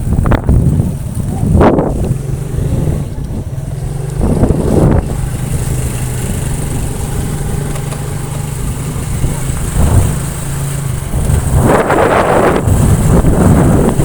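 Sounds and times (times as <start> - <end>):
engine humming: 0.0 - 14.0
wind gusting across microphone: 0.0 - 14.0.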